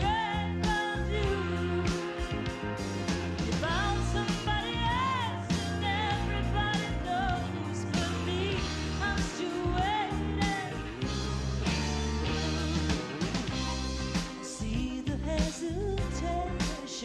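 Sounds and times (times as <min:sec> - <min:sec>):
country-rock band playing: 0:00.0 - 0:17.0.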